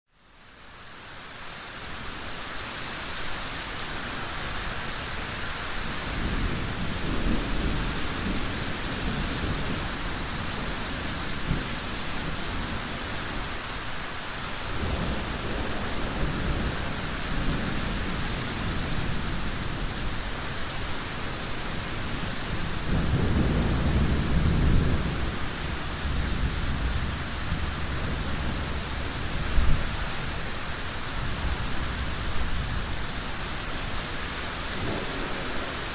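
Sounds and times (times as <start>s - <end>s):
thunder rolling: 22.5s - 25.4s, 34.8s - 35.9s
hail falling: 34.2s - 35.9s.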